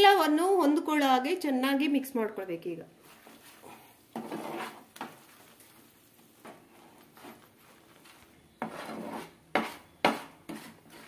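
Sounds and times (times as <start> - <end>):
spoon scraping a cooking pan: 4.1 - 5.3, 6.4 - 7.5, 8.6 - 11.0.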